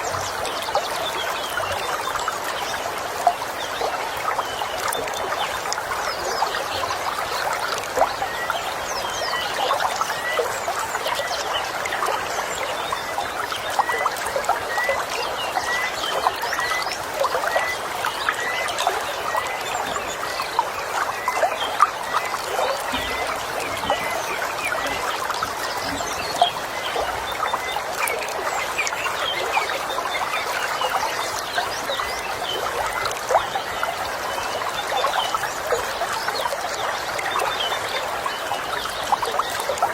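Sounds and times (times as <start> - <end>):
stream trickling over stones: 0.0 - 39.9
birds calling: 12.9 - 30.5.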